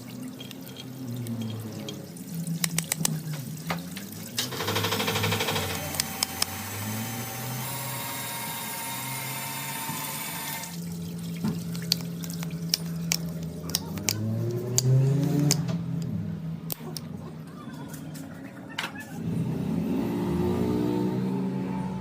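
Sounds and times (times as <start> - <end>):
water rushing from a pipe: 0.0 - 13.4.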